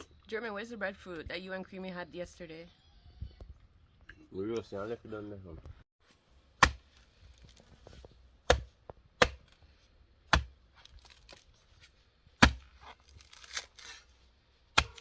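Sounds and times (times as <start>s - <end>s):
sharp chopping strikes: 6.6s - 6.9s, 8.4s - 9.6s, 10.3s - 10.6s, 12.4s - 12.9s, 14.7s - 15.0s.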